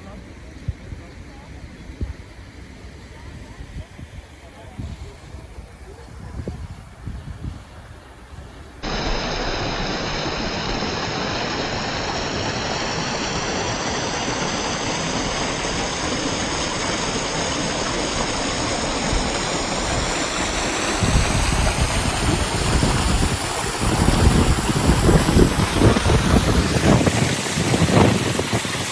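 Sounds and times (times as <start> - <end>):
waterfall rushing: 8.8 - 28.9.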